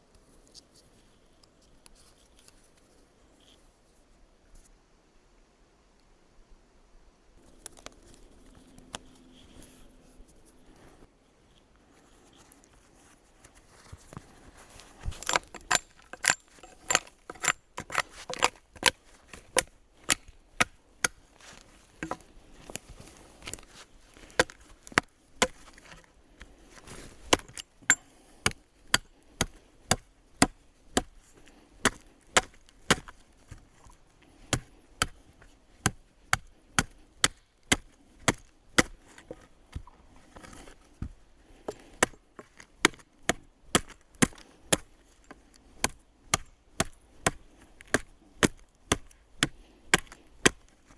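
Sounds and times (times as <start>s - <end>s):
axe chopping wood: 15.1s - 50.8s.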